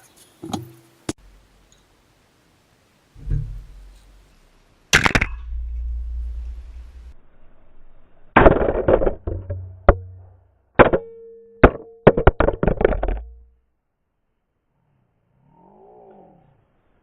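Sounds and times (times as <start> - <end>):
faint steady hum: 0.0 - 8.4
sharp knocks and clatters: 3.2 - 7.1, 8.4 - 13.5.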